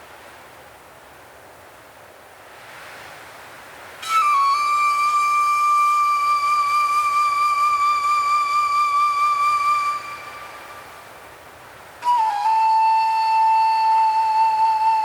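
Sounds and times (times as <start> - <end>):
soft wind hiss: 0.0 - 15.0
woodwind long note: 4.0 - 11.1, 12.0 - 15.0.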